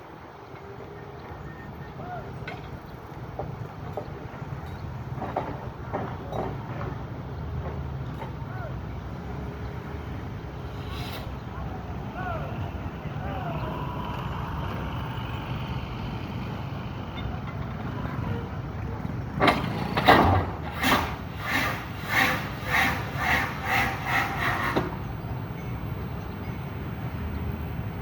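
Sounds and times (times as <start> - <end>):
excavator engine running: 8.8 - 28.0.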